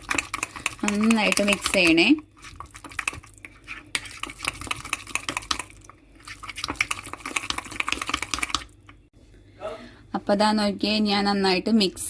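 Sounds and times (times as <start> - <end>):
spoon stirring batter in a mug: 0.0 - 9.1.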